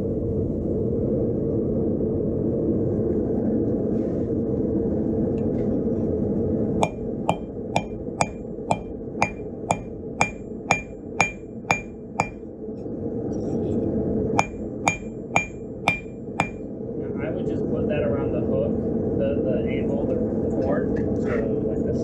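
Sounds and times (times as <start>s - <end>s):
hammer striking steel on anvil: 6.8s - 12.4s, 14.4s - 16.6s.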